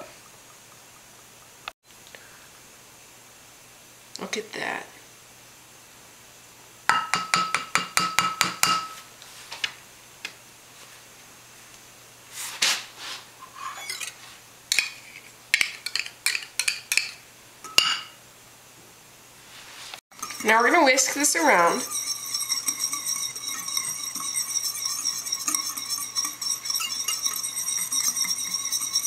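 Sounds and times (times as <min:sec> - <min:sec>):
utensils clinking against bowl: 0:13.5 - 0:15.0, 0:15.6 - 0:18.2, 0:20.1 - 0:29.0.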